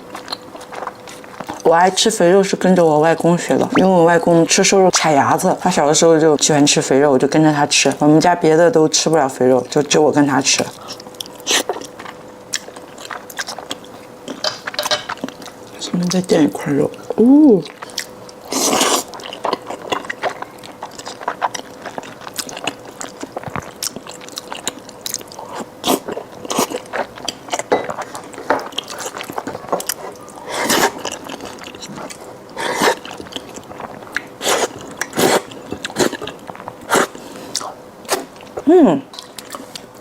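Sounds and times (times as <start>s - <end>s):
faint steady hum: 0.0s - 40.0s
wet chewing smacks: 10.8s - 15.7s, 17.6s - 39.9s.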